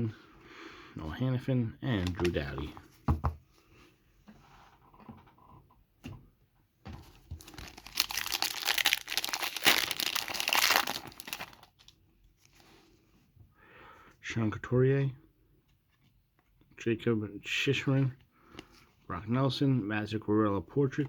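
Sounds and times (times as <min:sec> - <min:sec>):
foil wrapper tearing and crinkling: 0:07.4 - 0:11.9.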